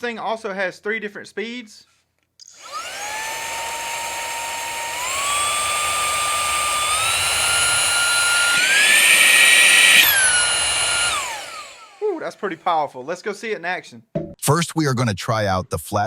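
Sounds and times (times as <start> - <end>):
handheld vacuum motor whining: 2.4 - 12.2.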